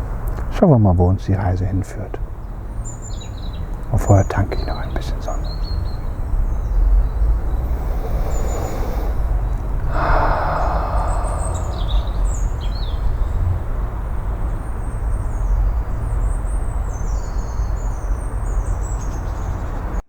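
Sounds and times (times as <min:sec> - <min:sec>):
steady low rumble: 0:07.0 - 0:13.6.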